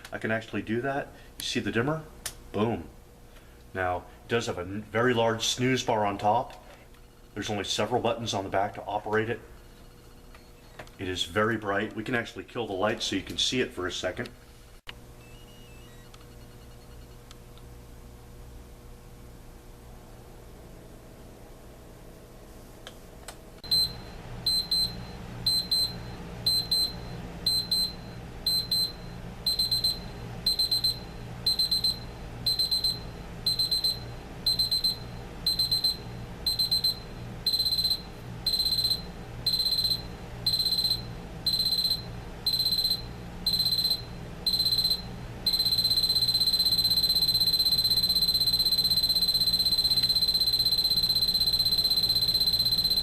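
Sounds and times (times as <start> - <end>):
digital alarm clock beeping: 23.6 - 53.0.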